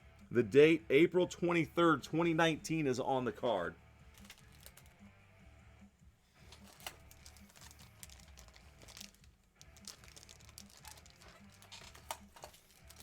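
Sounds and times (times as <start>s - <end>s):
quiet background music: 0.0s - 13.0s
card sleeve clicks and crinkles: 4.1s - 5.0s, 6.4s - 13.0s.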